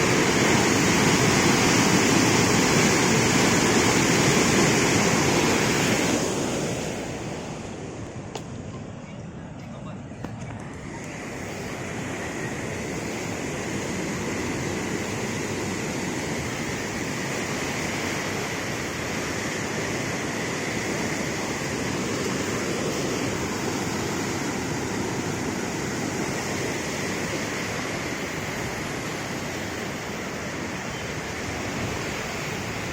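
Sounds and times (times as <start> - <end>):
river rushing in flood: 0.0 - 8.1, 11.0 - 32.9.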